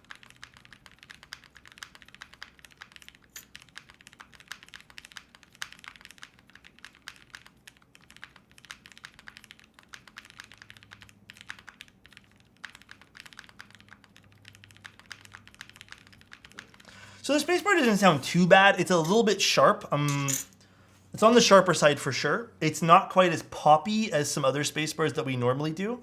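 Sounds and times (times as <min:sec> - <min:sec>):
mechanical keyboard typing: 0:00.0 - 0:16.9.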